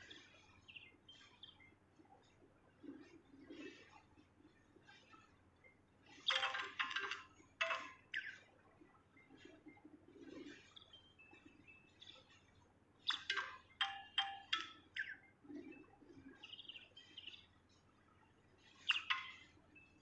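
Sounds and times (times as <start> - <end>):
songbird chirping: 0.0 - 20.0.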